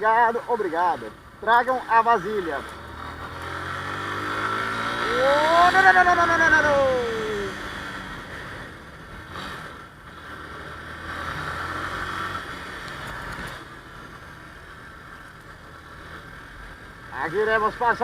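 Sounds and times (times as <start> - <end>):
motorcycle engine hum: 0.0 - 18.0.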